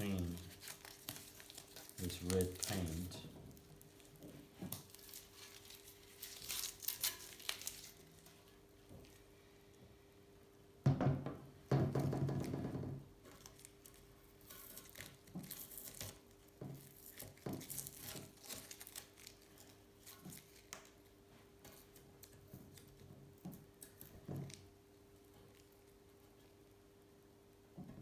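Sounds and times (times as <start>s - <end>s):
tape tearing and paper crinkling: 0.0s - 9.2s, 13.2s - 24.7s.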